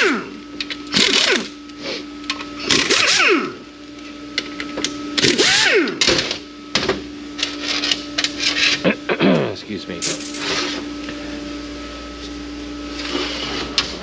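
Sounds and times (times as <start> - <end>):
steady hum: 0.0 - 14.0
power tool spinning up: 0.9 - 1.5, 2.6 - 3.6, 5.2 - 6.1.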